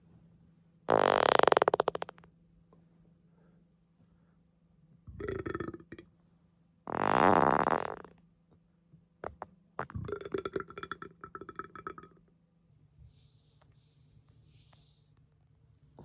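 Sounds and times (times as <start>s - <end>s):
person farting and burping: 0.9s - 2.2s, 6.9s - 8.1s, 9.2s - 12.2s.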